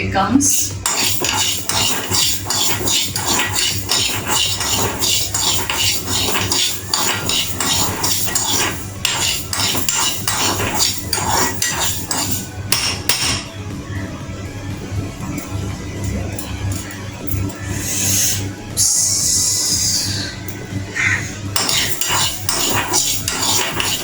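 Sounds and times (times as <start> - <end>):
spoon scraping in a pan: 0.5 - 13.5, 21.5 - 24.0.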